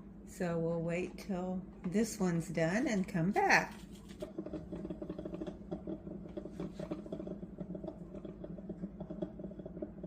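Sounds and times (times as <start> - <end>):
coffee maker hum: 0.0 - 10.0
crackles and pops of brewing water: 0.1 - 10.0.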